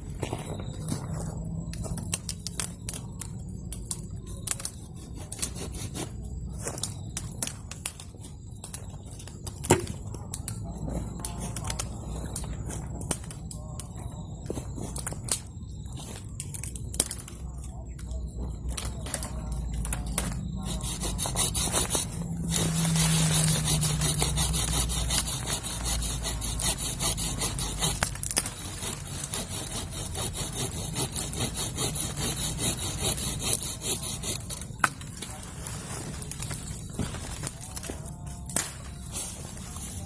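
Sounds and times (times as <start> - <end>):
hand saw cutting wood: 20.6 - 34.6.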